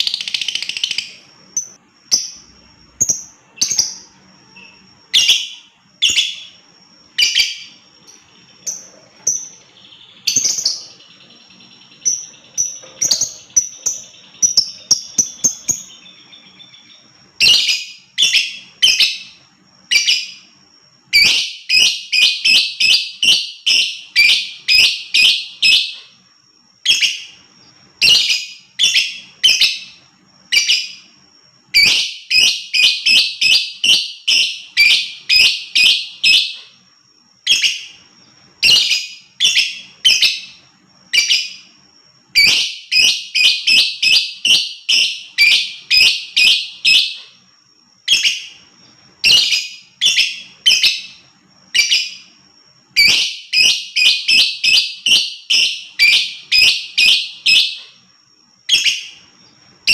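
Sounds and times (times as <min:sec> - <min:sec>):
lovebird shrill chirps: 0:00.0 - 0:26.2, 0:26.8 - 0:36.8, 0:37.4 - 0:47.4, 0:48.0 - 0:58.0, 0:58.7 - 0:59.9.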